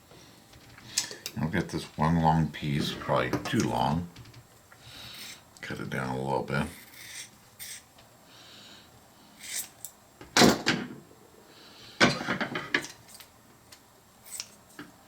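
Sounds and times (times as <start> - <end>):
knocks and clatters on workbench: 10.2 - 11.0, 12.0 - 12.9.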